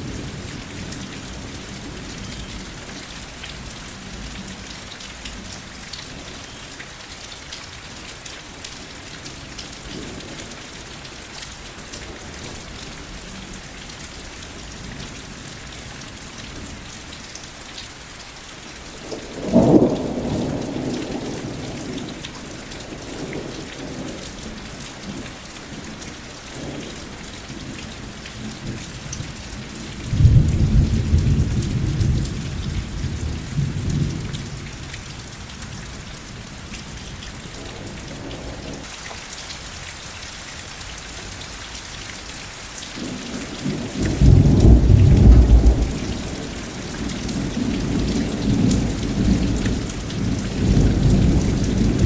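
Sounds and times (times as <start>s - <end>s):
steady rain: 0.0s - 52.0s
thunder rumbling: 43.0s - 52.0s.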